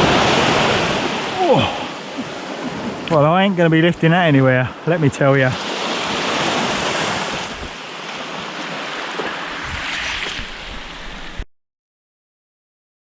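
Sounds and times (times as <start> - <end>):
sea waves washing onto beach: 0.0 - 11.4
wind on microphone: 6.0 - 7.8, 8.6 - 11.5.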